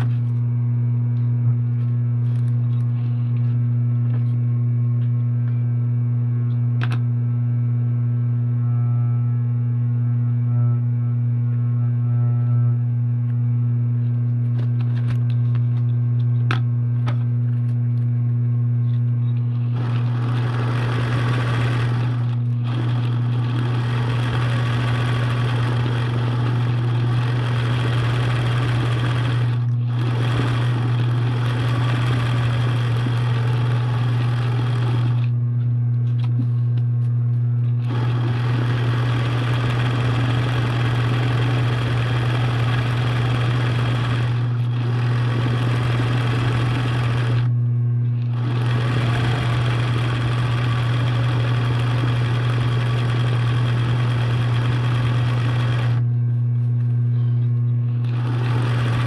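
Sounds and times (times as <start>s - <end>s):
sewing machine motor hum: 0.0s - 59.0s
sewing machine stitching: 19.6s - 35.3s, 37.8s - 47.5s, 48.2s - 56.0s, 58.0s - 59.0s.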